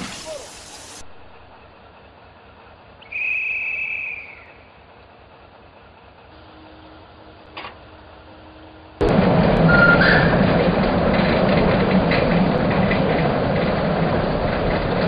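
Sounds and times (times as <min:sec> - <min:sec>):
train rumbling: 0:00.0 - 0:15.0.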